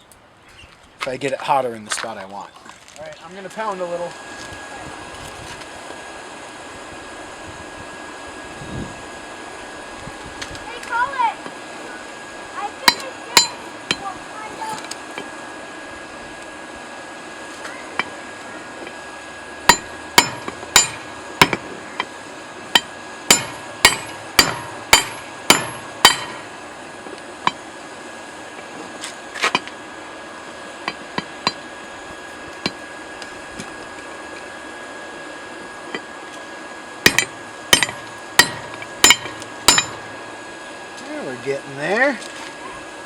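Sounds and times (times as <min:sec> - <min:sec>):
hammer striking hot metal: 0:12.8 - 0:14.1, 0:19.6 - 0:26.7, 0:27.4 - 0:27.6, 0:37.0 - 0:40.4.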